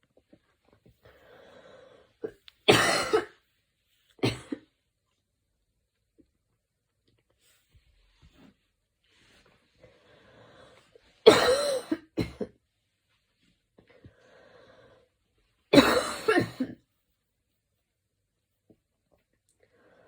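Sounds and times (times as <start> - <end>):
quiet breaths: 0.0 - 2.6, 7.2 - 11.2, 12.7 - 15.7, 18.6 - 20.0
woman coughing: 2.7 - 3.3, 4.2 - 4.6, 11.3 - 12.5, 15.8 - 16.8.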